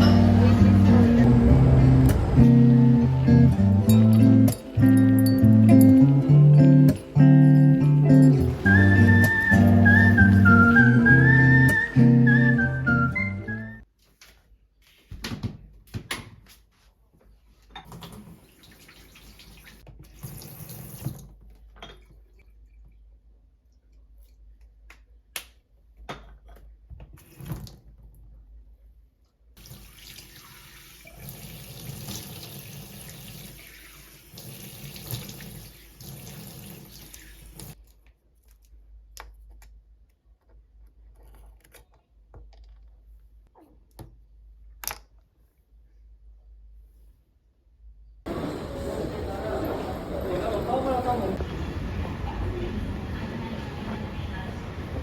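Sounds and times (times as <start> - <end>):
tap water running into sink: 29.6 - 37.8.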